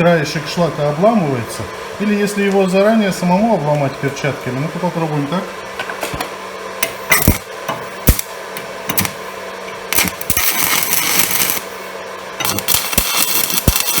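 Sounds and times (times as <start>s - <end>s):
welding arc sputtering and crackling: 0.0s - 14.0s
electrode clicking on steel plate: 6.8s - 7.5s, 8.1s - 8.3s, 8.9s - 9.2s, 9.9s - 11.6s, 12.4s - 14.0s.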